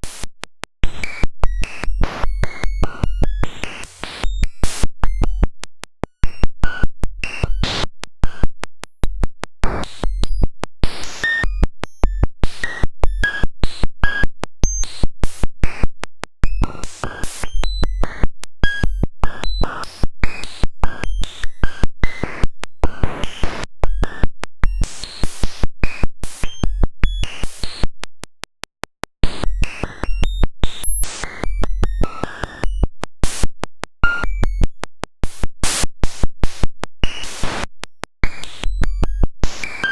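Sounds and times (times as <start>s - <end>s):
glitchy clicks and tones: 0.9s - 13.4s.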